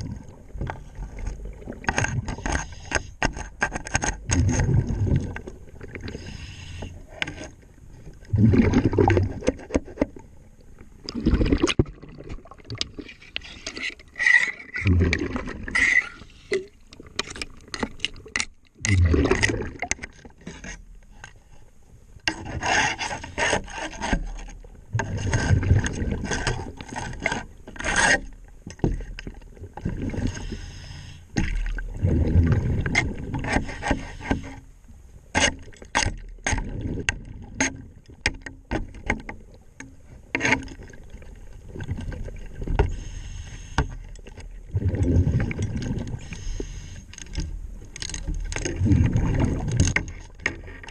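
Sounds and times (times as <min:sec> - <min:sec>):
scrubbing tool scraping underwater hull: 0:00.2 - 0:07.6, 0:08.3 - 0:10.2, 0:22.3 - 0:34.7, 0:40.1 - 0:50.9
underwater rushing bursts: 0:08.2 - 0:09.4, 0:14.8 - 0:16.3, 0:31.8 - 0:33.4, 0:44.7 - 0:46.8, 0:48.6 - 0:49.9.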